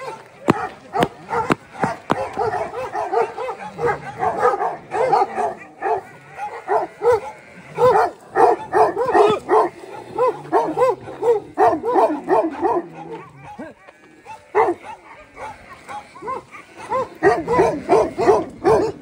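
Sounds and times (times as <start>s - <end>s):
dog barking: 0.0s - 19.0s.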